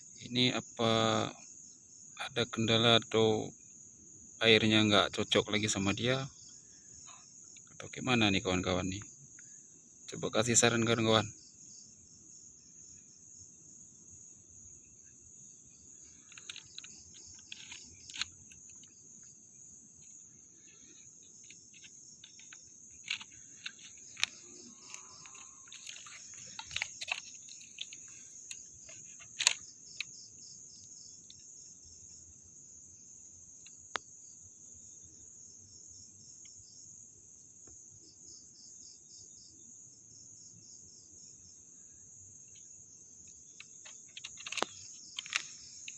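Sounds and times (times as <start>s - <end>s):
crickets trilling: 0.0s - 45.9s.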